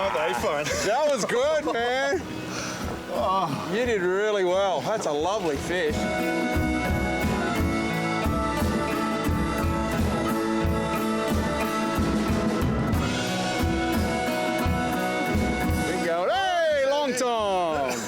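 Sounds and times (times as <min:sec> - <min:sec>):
background music with drum beat: 0:00.0 - 0:18.0.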